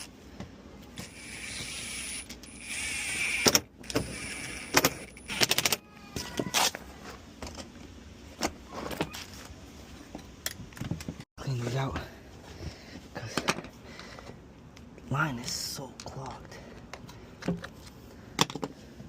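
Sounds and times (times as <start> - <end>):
handling knocks and clicks: 10.1 - 11.2.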